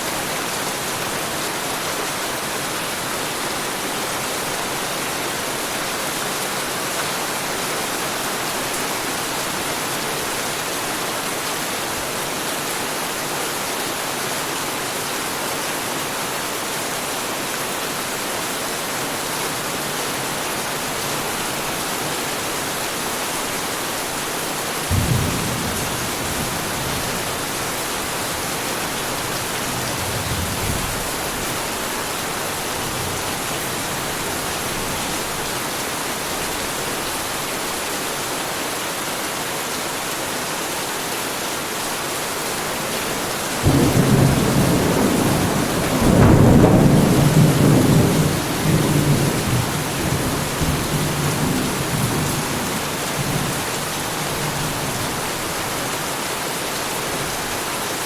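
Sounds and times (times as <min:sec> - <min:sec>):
heavy rain falling: 0:00.0 - 0:58.0
thunder rumbling: 0:43.2 - 0:53.6.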